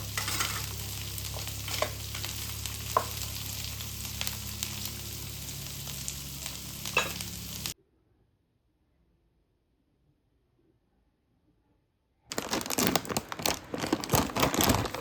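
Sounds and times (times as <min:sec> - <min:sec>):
food sizzling in a frying pan: 0:00.0 - 0:07.8.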